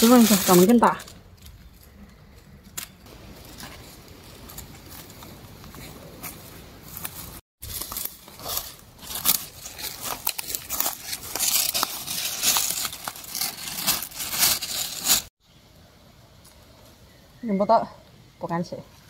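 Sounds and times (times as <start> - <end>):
dry leaves and twigs crackling: 0.0 - 15.3.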